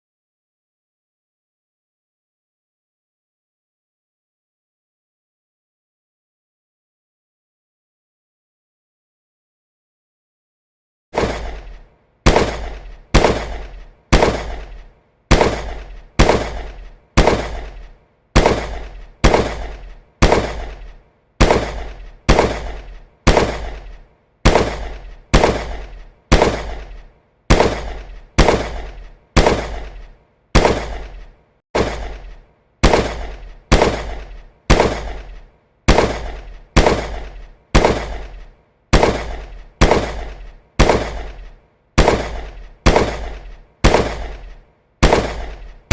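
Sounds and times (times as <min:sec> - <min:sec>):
gunshots with echo: 0:11.2 - 0:45.9.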